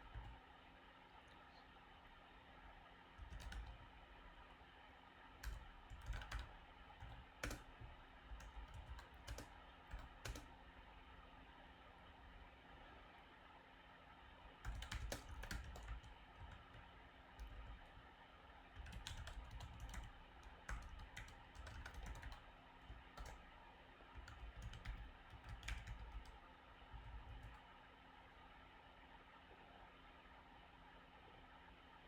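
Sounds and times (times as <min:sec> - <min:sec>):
computer keyboard typing: 0:00.0 - 0:00.4, 0:03.2 - 0:04.0, 0:05.4 - 0:10.6, 0:14.6 - 0:18.0, 0:18.7 - 0:27.6.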